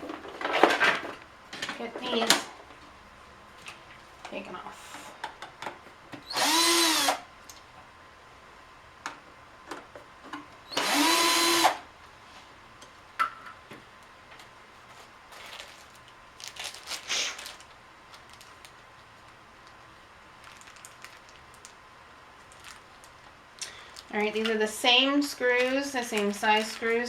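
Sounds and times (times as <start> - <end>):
cordless screwdriver whirring: 6.2 - 7.3, 10.7 - 11.8.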